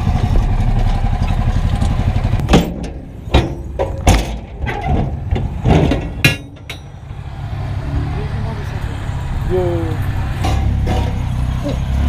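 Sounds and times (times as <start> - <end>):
motorcycle engine idling: 0.0 - 4.0
sharp knocks: 2.4 - 7.0.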